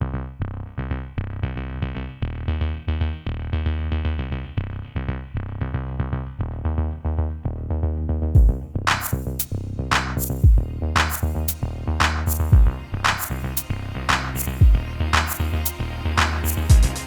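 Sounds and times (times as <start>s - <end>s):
bass line: 0.0s - 17.0s
drum-machine beat: 8.4s - 17.0s.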